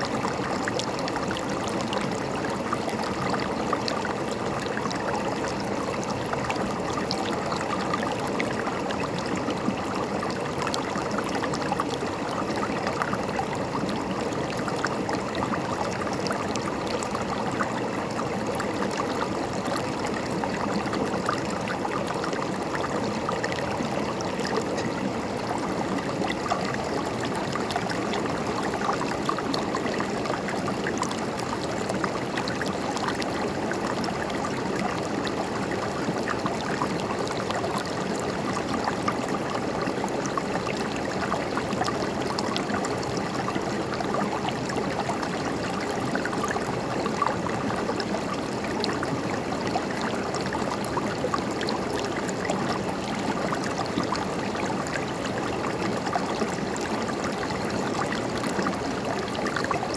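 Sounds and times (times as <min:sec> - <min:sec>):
river water flowing over rocks: 0:00.0 - 0:59.9.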